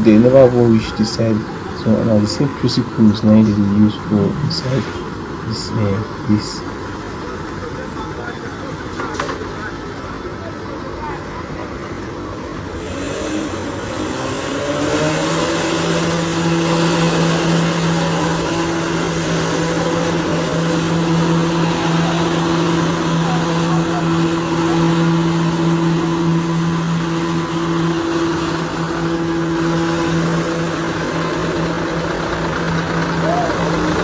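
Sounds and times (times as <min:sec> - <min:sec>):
road traffic hiss: 0:00.0 - 0:34.0
vehicle engine revving: 0:11.4 - 0:34.0.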